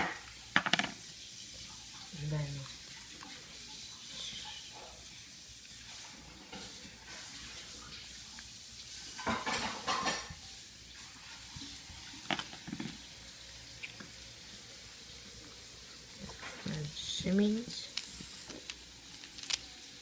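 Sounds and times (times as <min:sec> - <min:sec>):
fidget spinner whirring: 0:16.2 - 0:19.7.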